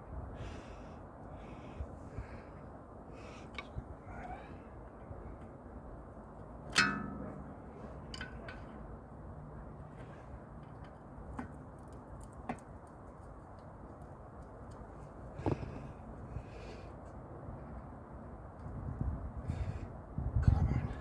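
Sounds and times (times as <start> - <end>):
metallic clank: 6.7 - 7.5.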